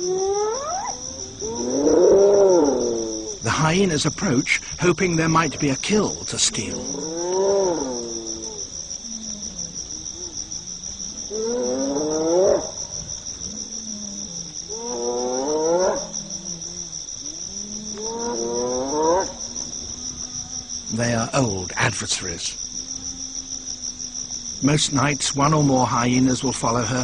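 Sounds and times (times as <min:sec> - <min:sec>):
hyenas whooping: 0:00.0 - 0:03.4
crickets chirring: 0:00.0 - 0:27.0.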